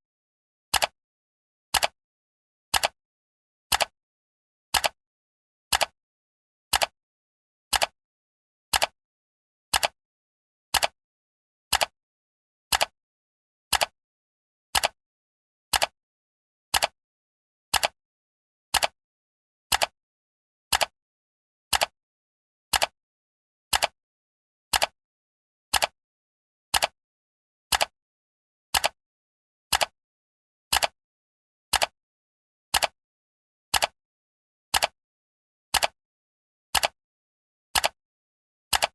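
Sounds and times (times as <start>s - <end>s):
clock ticking: 36.8s - 37.0s.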